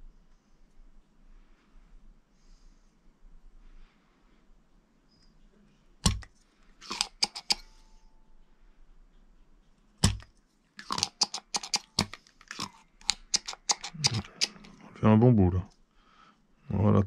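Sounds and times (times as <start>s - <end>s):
small clicks and taps: 9.2s - 14.7s.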